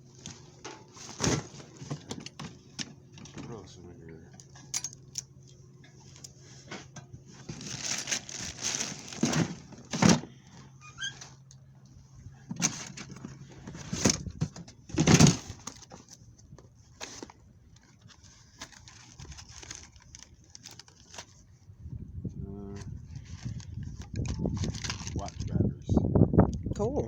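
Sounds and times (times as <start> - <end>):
bag rustling: 7.3 - 10.3.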